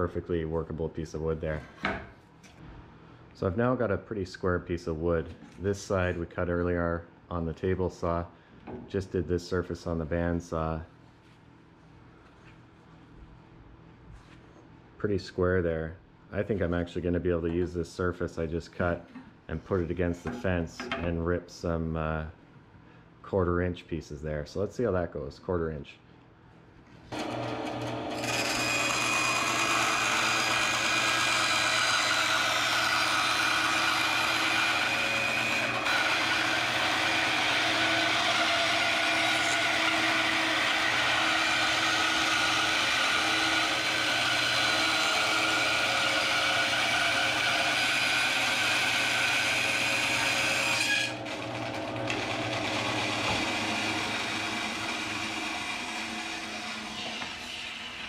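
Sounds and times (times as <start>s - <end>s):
bandsaw ripping wood: 27.1s - 57.4s
bandsaw running freely: 27.1s - 58.0s.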